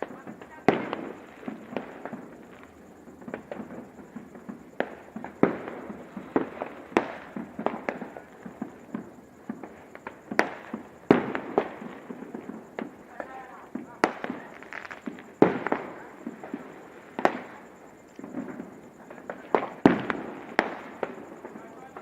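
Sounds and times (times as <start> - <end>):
fireworks and firecrackers bangs: 0.0 - 22.0.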